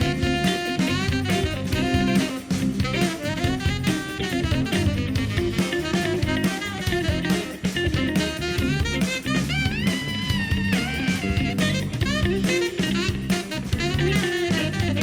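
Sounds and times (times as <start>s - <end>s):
jazzy instrumental groove: 0.0s - 15.0s.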